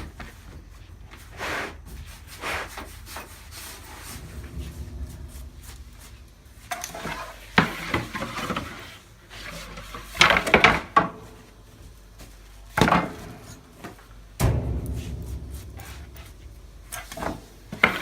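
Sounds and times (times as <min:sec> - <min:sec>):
wood and metal scraping: 0:03.1 - 0:10.5.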